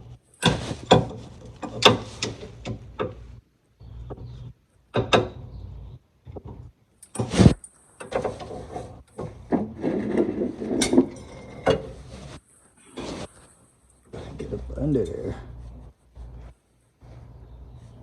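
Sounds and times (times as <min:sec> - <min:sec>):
knocks and scrapes of objects handled: 0:00.4 - 0:03.2, 0:06.3 - 0:14.4.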